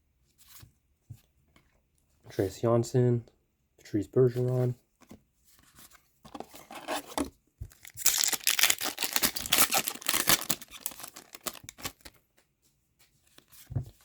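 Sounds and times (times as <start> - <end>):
wrapper tearing and crinkling: 7.7 - 12.1.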